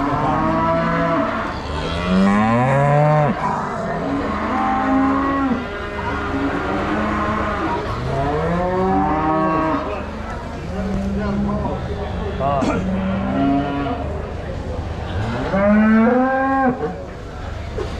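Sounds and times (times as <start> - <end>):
cattle mooing: 0.0 - 10.0.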